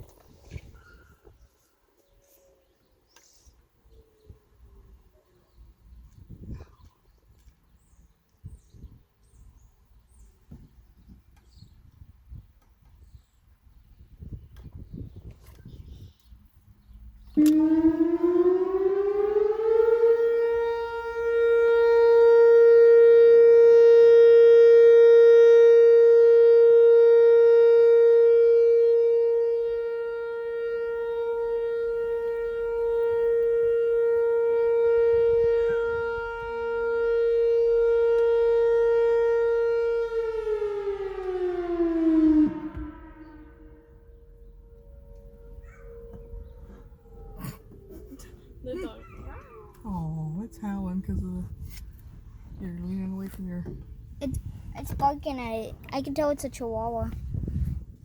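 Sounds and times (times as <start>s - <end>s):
warning siren: 17.2s - 54.7s.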